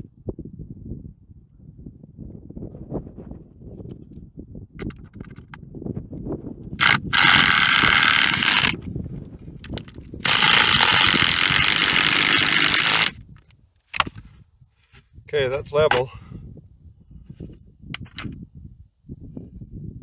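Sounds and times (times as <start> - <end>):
cordless power driver rattling: 4.8 - 5.6, 6.8 - 9.0, 9.6 - 14.3, 18.0 - 18.4.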